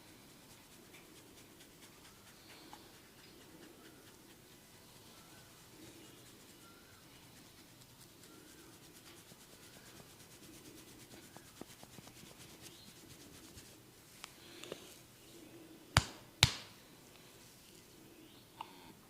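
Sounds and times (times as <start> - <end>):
hands rubbing over head and skin: 0.0 - 15.0.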